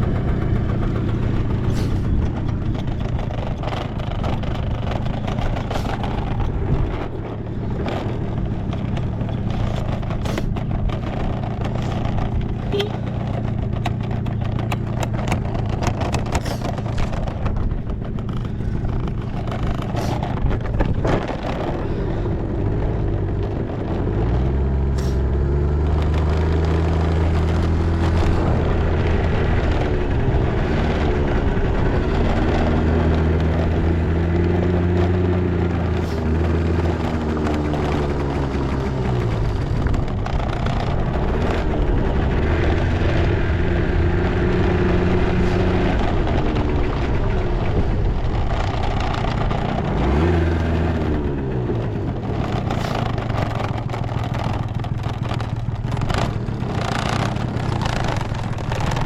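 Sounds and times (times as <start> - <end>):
scooter engine idling: 0.0 - 24.0, 50.7 - 59.0.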